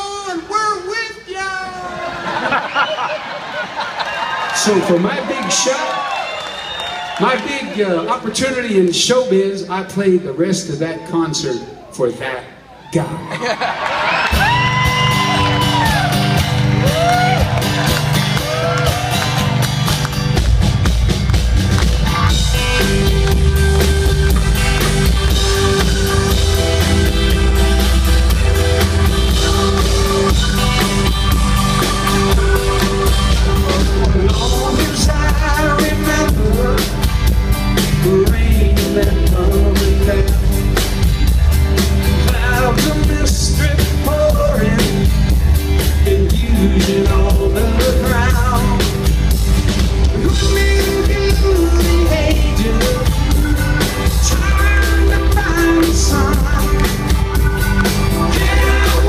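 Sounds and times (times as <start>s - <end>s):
live rock band playing: 14.0s - 59.0s
drum kit beat: 14.3s - 59.0s.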